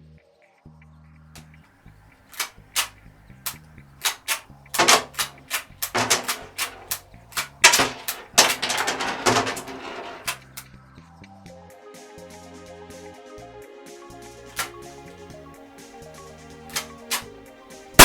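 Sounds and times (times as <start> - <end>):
cap gun firing: 2.4 - 10.6, 14.6 - 14.8, 16.7 - 17.3.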